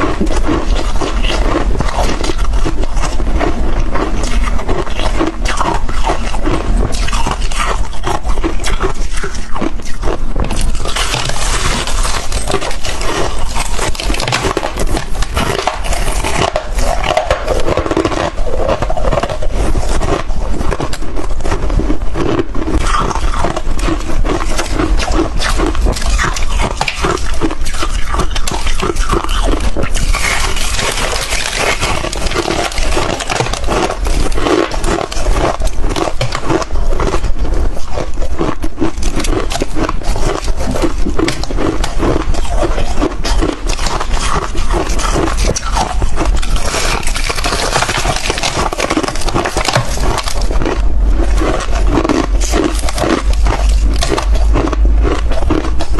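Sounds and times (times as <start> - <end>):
crunching and chewing frost: 0.0 - 55.9.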